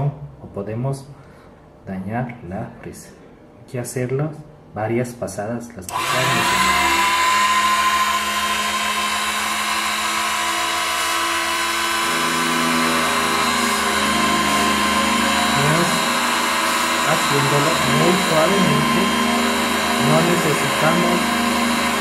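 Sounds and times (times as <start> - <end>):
key-cutting machine whine: 5.9 - 22.0.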